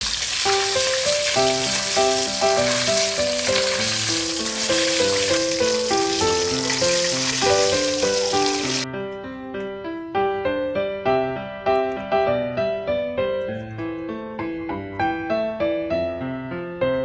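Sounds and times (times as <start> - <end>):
chicken sizzling: 0.0 - 8.8
light piano music: 0.0 - 17.0.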